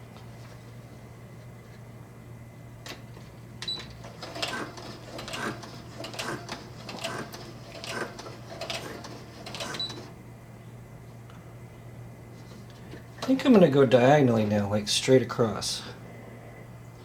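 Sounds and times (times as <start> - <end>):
sewing machine stitching: 4.1 - 10.0.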